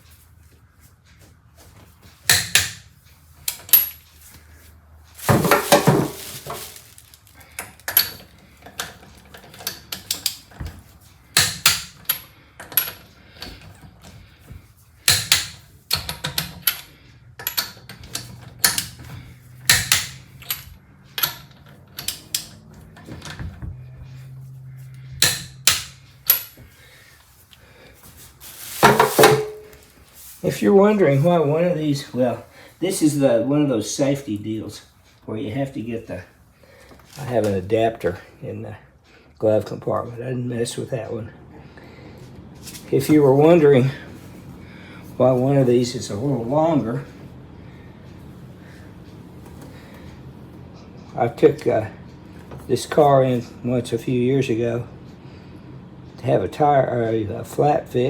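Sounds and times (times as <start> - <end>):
metal tools clinking: 3.5 - 4.3, 5.2 - 10.6, 25.2 - 26.7, 28.5 - 30.0.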